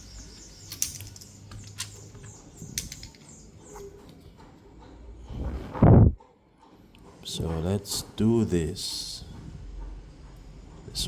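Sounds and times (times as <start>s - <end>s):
light clicks of small parts: 0.5s - 4.2s.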